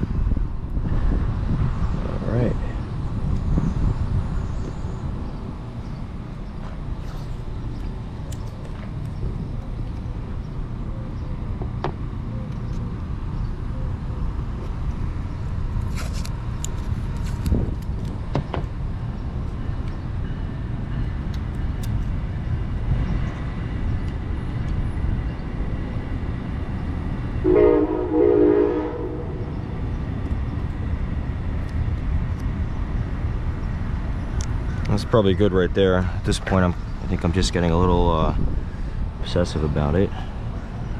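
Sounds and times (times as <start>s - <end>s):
low background rumble: 23.8s - 40.9s
horn blasts: 27.4s - 29.5s.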